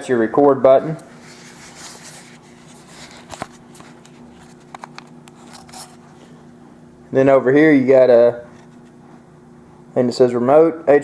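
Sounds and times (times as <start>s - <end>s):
steady low hum: 0.0s - 11.0s
camcorder handling rubbing: 1.2s - 6.4s, 8.5s - 9.0s.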